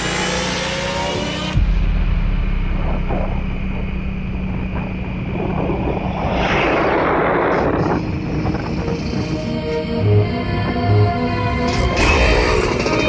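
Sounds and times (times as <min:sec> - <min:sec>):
vehicle rumbling along road: 0:00.0 - 0:10.7
rush of noise: 0:01.5 - 0:10.1.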